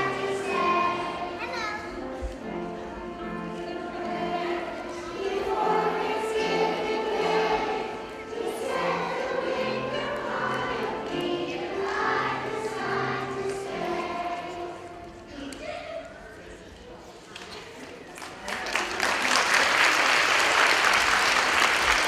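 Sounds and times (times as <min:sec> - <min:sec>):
children singing in unison: 0:00.0 - 0:15.2.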